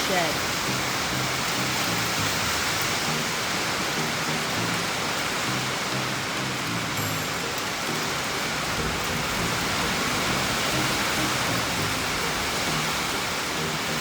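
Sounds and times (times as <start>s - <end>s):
heavy rain on a shed roof: 0.0s - 14.0s.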